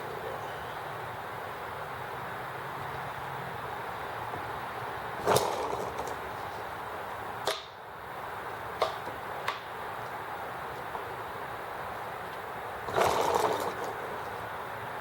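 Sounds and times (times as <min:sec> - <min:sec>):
engine sharp pops: 0:05.2 - 0:06.2, 0:07.4 - 0:07.8, 0:08.8 - 0:09.8
model engine running: 0:05.2 - 0:06.5, 0:12.8 - 0:14.4.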